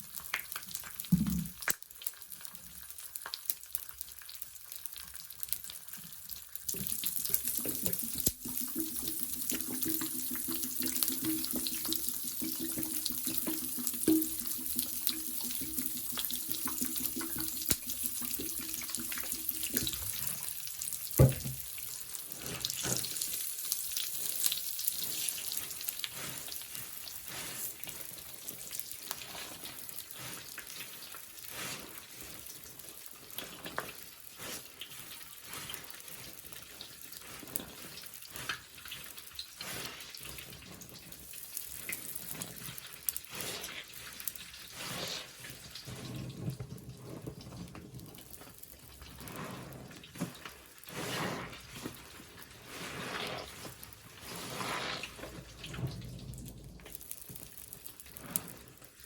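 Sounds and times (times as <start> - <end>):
liquid dripping and splashing: 5.1 - 31.3, 53.6 - 58.9
wet sponge squelching: 6.8 - 20.6, 42.0 - 46.5, 49.2 - 56.3.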